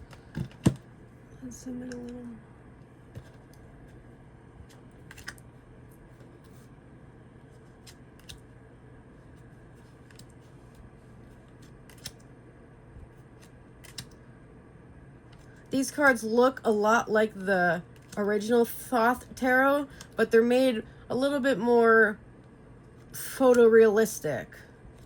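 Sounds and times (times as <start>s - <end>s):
cards clicking and flicking: 4.6s - 5.4s, 7.6s - 8.5s, 10.0s - 10.8s, 11.4s - 12.3s, 13.3s - 14.2s.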